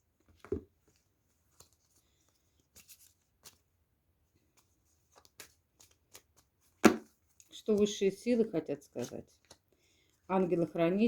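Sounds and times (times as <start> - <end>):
cards tapping and rustling: 4.5 - 8.0.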